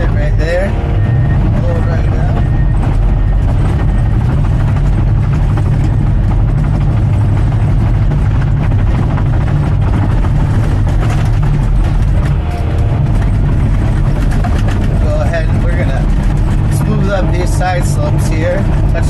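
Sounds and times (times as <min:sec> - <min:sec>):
bulldozer diesel engine droning: 0:00.0 - 0:19.0
engine rattle: 0:00.0 - 0:19.0.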